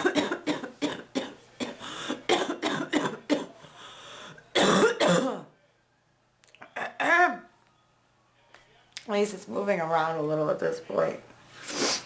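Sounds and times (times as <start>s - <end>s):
woman coughing: 0.0s - 3.6s, 4.6s - 5.5s, 6.8s - 7.4s.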